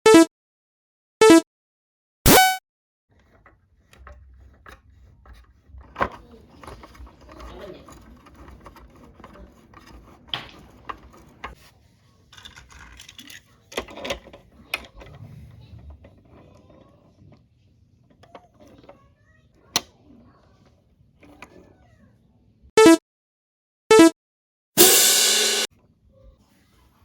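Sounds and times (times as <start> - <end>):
wooden toy railway pieces clicking: 3.1 - 15.2.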